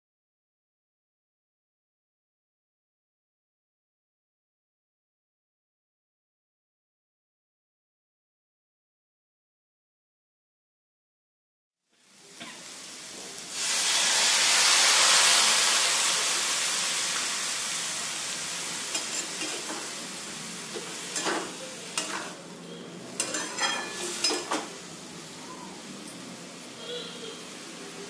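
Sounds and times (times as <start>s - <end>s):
food sizzling in hot oil: 12.0s - 28.0s
spatula scraping a pan: 18.9s - 19.9s, 20.8s - 22.4s, 23.2s - 24.7s.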